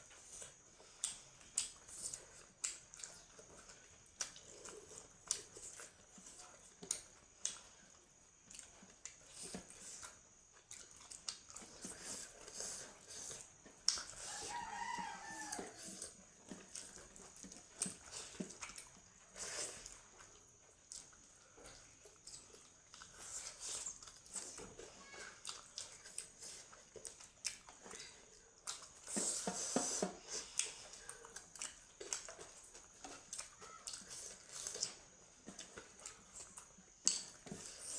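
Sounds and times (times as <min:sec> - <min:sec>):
wet chewing and lip-smacking: 0:00.0 - 0:37.9
rooster crowing: 0:14.2 - 0:16.1.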